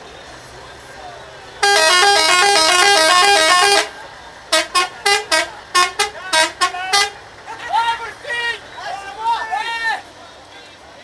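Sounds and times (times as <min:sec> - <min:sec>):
short horn toots: 0:01.6 - 0:03.9, 0:04.5 - 0:07.2
musical air horns: 0:01.6 - 0:07.2.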